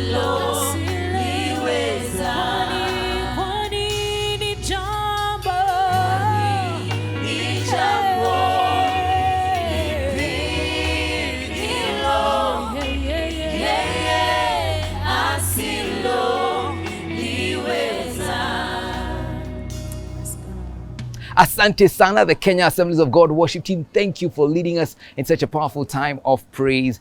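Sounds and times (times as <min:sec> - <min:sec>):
choir singing gospel: 0:00.0 - 0:21.0
bass line: 0:00.0 - 0:21.8.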